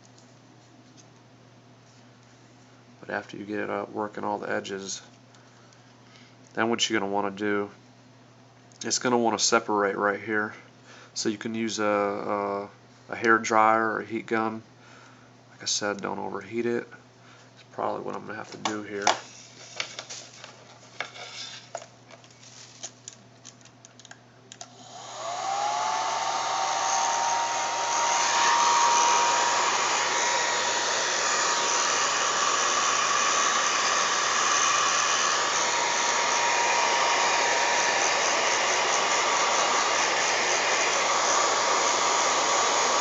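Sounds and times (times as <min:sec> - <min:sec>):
hot-air blower whining: 0:24.6 - 0:43.0.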